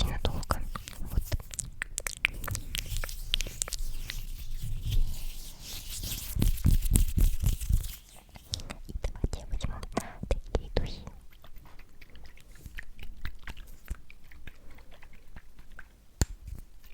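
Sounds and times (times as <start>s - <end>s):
wet mouth clicks and smacks: 0.0s - 4.3s, 8.2s - 16.9s.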